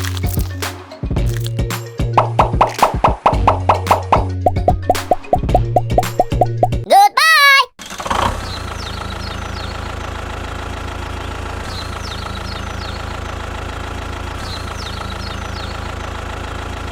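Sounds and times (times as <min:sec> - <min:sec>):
engine idling: 0:08.4 - 0:16.9.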